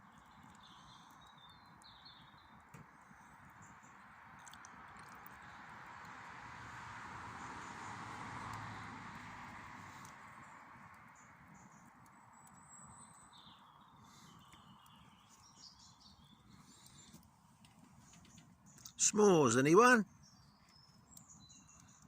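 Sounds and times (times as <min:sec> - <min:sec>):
faint bird chirps: 0:00.0 - 0:04.0, 0:11.2 - 0:22.0
steady outdoor noise: 0:00.0 - 0:22.0.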